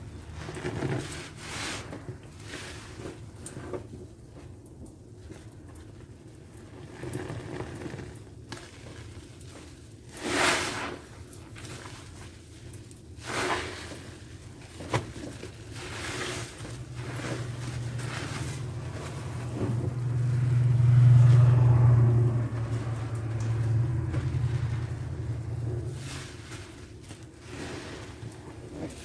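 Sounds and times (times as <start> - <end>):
wet sponge squelching: 13.2 - 29.0
low steady hum: 15.8 - 28.8.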